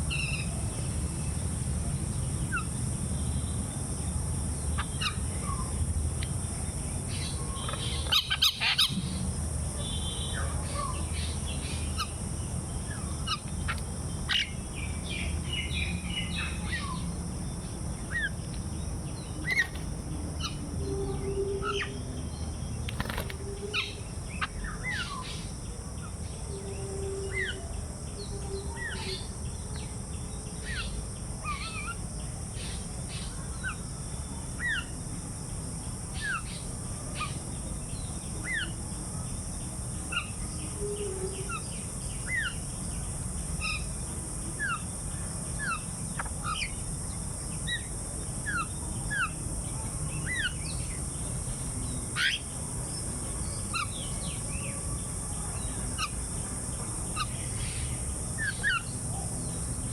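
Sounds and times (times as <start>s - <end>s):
small birds chirping: 0.0s - 59.9s
steady high hiss: 0.0s - 59.9s.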